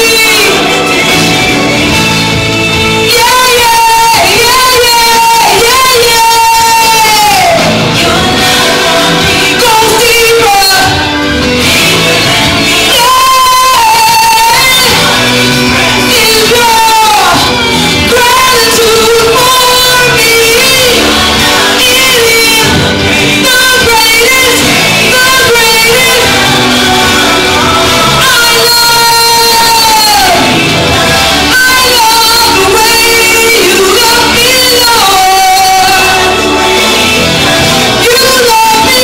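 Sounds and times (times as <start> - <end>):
instrumental accompaniment: 0.0 - 39.0
loud worship singing: 0.0 - 39.0.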